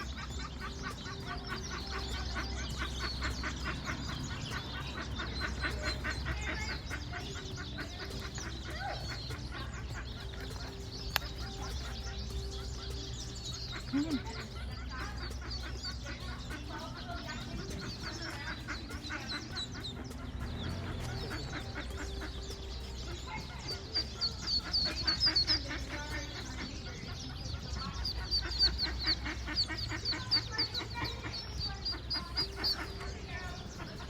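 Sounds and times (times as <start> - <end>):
ducklings peeping: 0.0 - 34.0.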